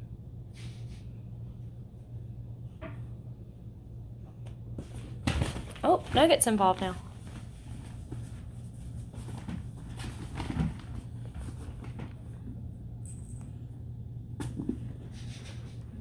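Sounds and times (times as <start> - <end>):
steady low hum: 0.0 - 16.0
kittens scuffling: 4.4 - 16.0.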